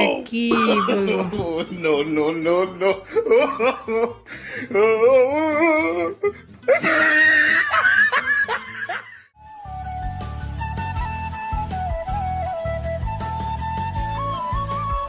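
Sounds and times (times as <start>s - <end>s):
wobbling laughing voice: 0.3s - 1.4s
flute melody over steady beat: 9.6s - 15.0s.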